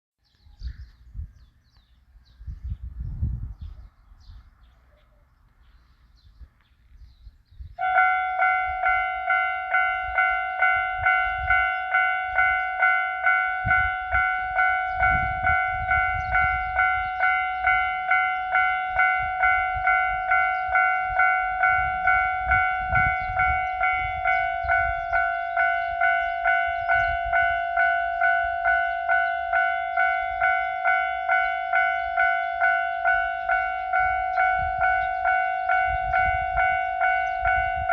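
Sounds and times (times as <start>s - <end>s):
level crossing bell dinging: 7.8s - 37.9s.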